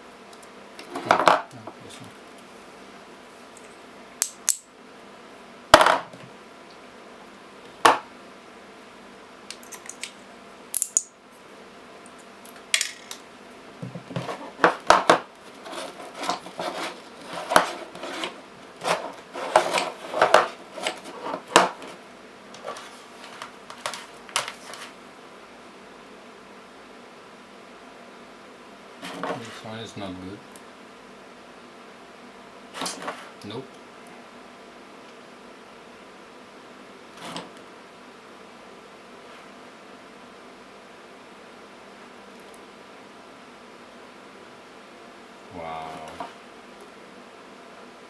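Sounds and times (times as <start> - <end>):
battery cells clinking on hard surface: 3.6 - 4.7, 9.5 - 11.2.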